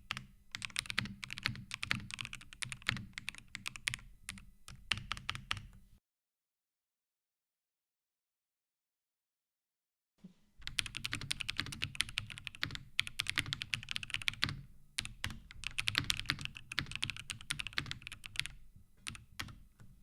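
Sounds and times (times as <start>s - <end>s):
fast typing on mechanical keyboard: 0.0s - 5.7s, 10.6s - 19.7s.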